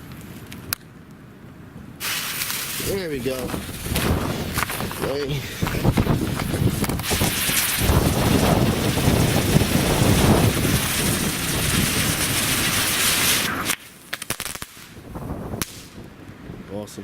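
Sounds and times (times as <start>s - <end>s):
firework crackling hiss: 2.0s - 16.1s
wind buffeting microphone: 2.7s - 13.7s, 14.9s - 16.9s.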